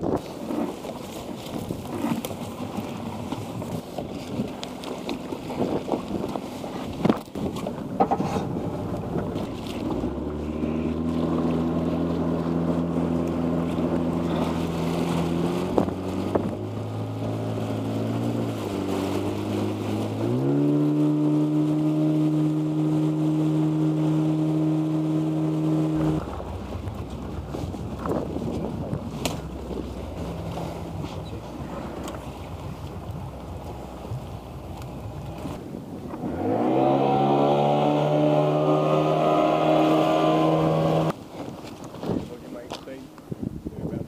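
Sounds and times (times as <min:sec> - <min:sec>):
wind noise on microphone: 0:00.0 - 0:44.0
engine running: 0:08.0 - 0:41.2.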